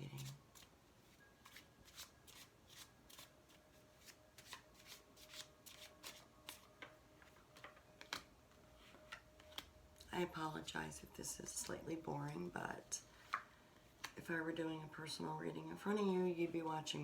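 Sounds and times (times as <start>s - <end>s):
cards being shuffled: 0.1s - 9.7s.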